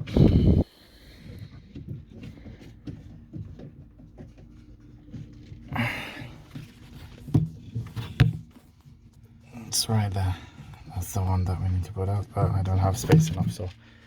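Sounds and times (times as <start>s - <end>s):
breathy exhale: 0.0s - 1.5s, 5.7s - 6.5s
faint handling noises: 0.8s - 14.0s.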